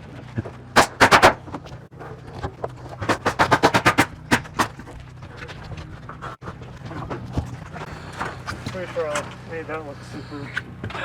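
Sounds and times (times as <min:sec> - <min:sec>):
sharp knocks: 0:00.8 - 0:01.5.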